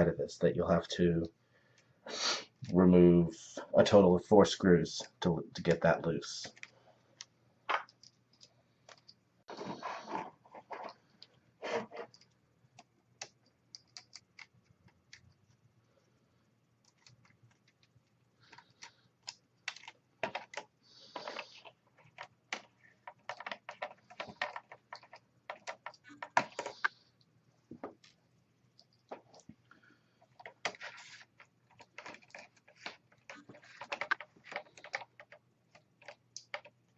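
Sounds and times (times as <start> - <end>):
small parts being handled: 16.7 - 27.0, 30.2 - 36.9.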